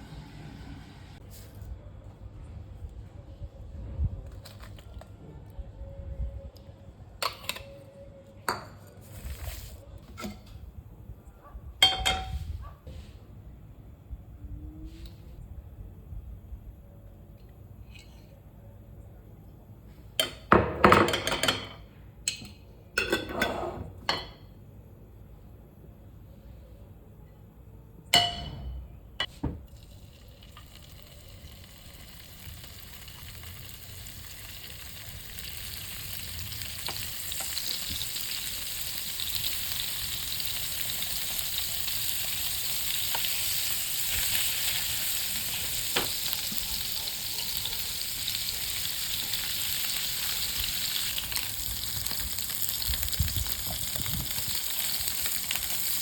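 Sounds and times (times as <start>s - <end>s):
utensils clinking on pan: 11.8s - 12.4s
food sizzling in a hot pan: 29.8s - 56.0s.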